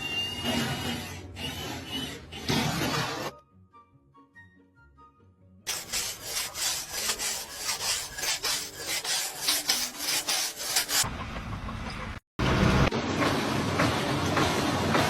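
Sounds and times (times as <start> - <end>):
rasping strokes: 5.7 - 11.1.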